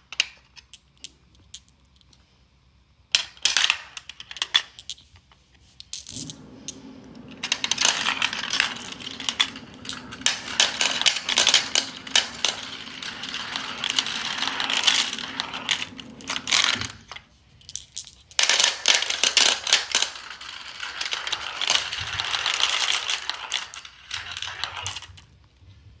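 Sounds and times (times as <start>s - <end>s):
steady low hum: 5.2s - 18.4s
marbles rolling down a marble run: 6.0s - 25.3s.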